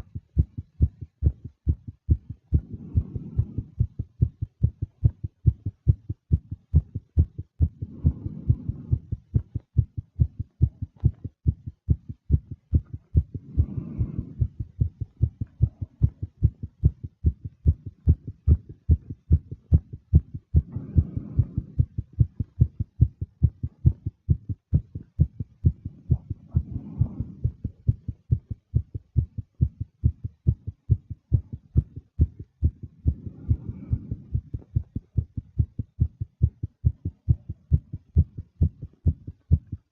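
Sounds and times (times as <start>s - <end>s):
fast heartbeat thumps: 0.0s - 39.9s
soft breaths: 0.0s - 39.9s.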